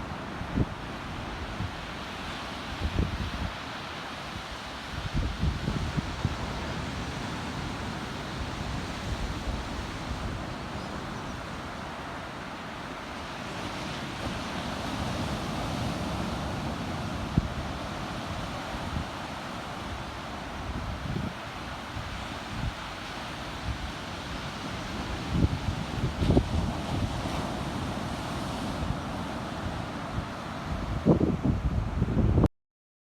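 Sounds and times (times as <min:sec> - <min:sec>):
ocean surf breaking: 0:00.0 - 0:32.1
wind buffeting microphone: 0:04.9 - 0:11.8, 0:23.5 - 0:32.5.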